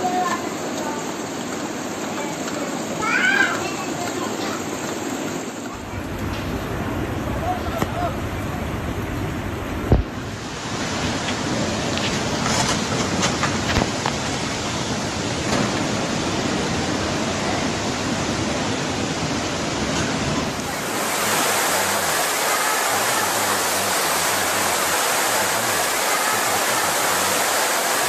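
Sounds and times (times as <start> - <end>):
faint voices: 0.0 - 14.5, 20.4 - 28.0
floodwater rushing: 0.0 - 28.0.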